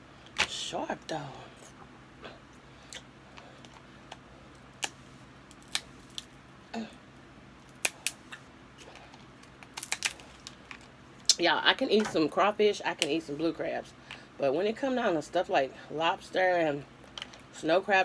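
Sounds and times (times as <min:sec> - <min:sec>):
lobster shell cracking: 0:04.1 - 0:06.4, 0:07.6 - 0:08.4, 0:09.4 - 0:10.9.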